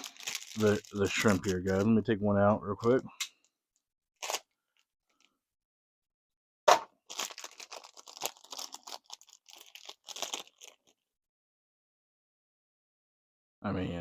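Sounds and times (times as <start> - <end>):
plastic packaging crack: 0.0 - 1.9, 4.2 - 4.5, 6.7 - 11.0
packaging crinkling: 0.0 - 2.1, 4.2 - 5.4, 6.9 - 11.0.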